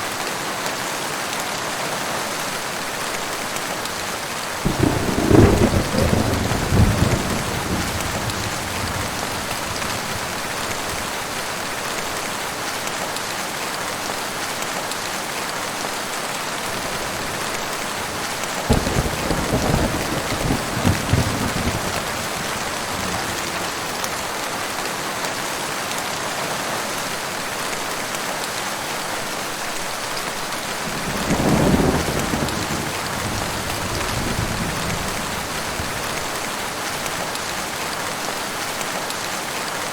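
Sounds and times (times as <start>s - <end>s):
heavy rain falling: 0.0s - 39.9s
thunder rumbling: 4.6s - 11.2s, 16.9s - 23.8s, 30.9s - 36.3s.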